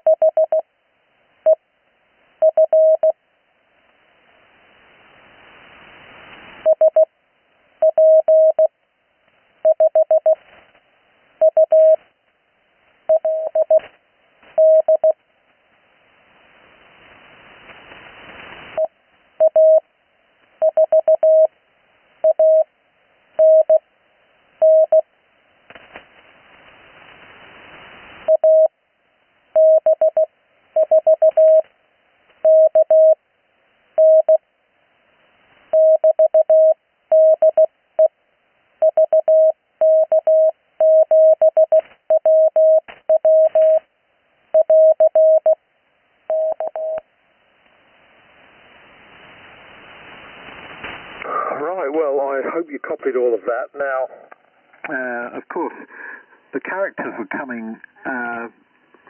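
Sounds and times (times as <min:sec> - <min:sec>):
morse code tone: 0:07.8 - 0:08.7, 0:13.1 - 0:13.8, 0:14.6 - 0:15.2, 0:20.6 - 0:21.5, 0:29.6 - 0:31.6, 0:32.5 - 0:33.2, 0:34.0 - 0:34.4, 0:35.8 - 0:38.1, 0:38.8 - 0:43.8, 0:44.6 - 0:45.6, 0:46.3 - 0:47.0
radio band hiss: 0:16.4 - 0:18.8, 0:48.4 - 0:59.0.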